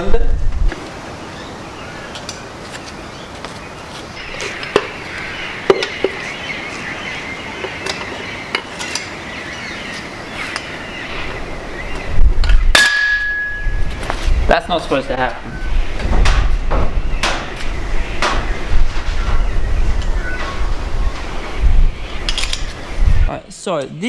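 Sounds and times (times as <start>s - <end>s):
loud knock: 15.4s - 19.4s.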